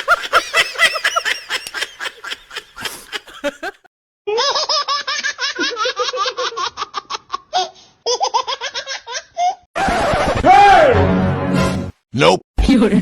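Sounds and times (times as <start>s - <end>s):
person laughing: 0.0s - 3.9s, 9.8s - 10.5s.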